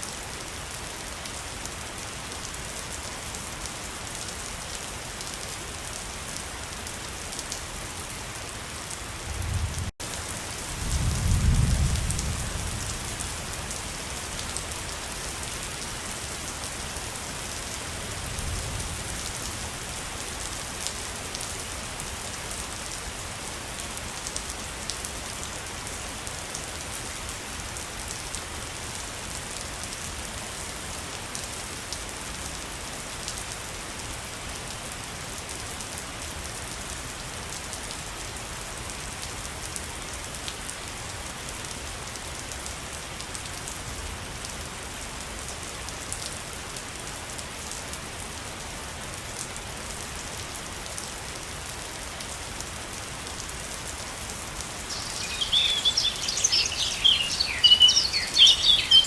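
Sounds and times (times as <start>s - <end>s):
waterfall rushing: 54.7s - 59.0s.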